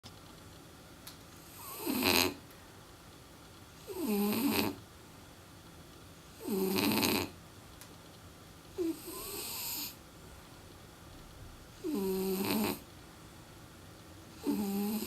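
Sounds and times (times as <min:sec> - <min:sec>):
dog snoring: 0:01.4 - 0:02.4, 0:03.8 - 0:04.8, 0:06.4 - 0:07.4, 0:08.8 - 0:10.0, 0:11.8 - 0:12.9, 0:14.4 - 0:15.0.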